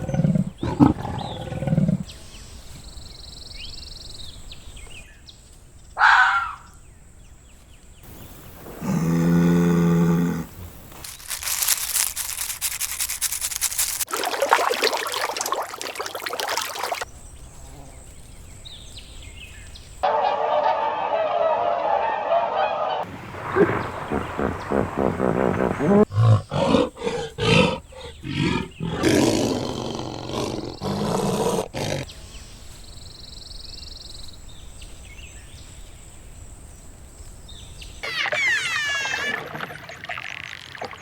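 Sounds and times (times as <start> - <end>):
animal calls: 20.4 - 32.1, 38.0 - 40.0.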